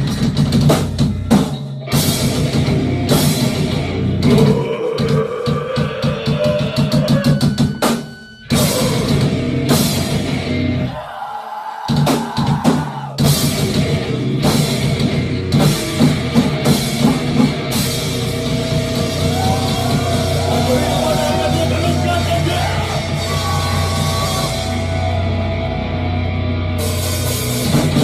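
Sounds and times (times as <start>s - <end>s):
rock band playing: 0.0s - 11.0s, 11.9s - 28.0s
drum fill: 11.9s - 25.0s.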